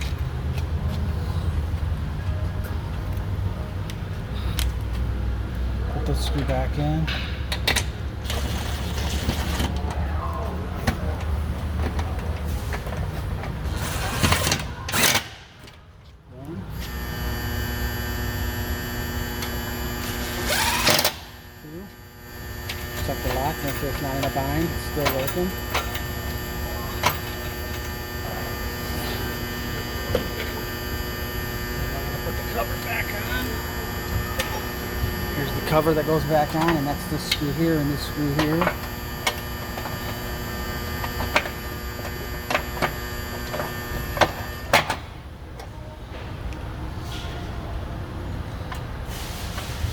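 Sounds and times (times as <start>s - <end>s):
steady electrical hum: 12.5s - 45.6s
cordless drill driving screw: 16.8s - 28.2s, 33.5s - 44.7s.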